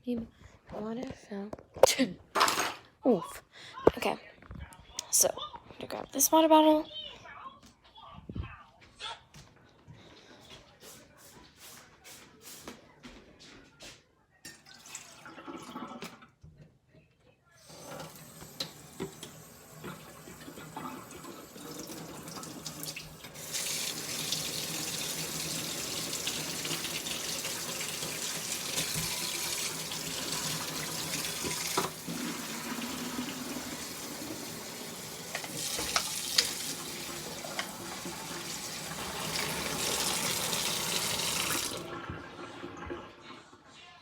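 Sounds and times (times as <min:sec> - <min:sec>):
tap water running into bottle: 0:17.7 - 0:43.1.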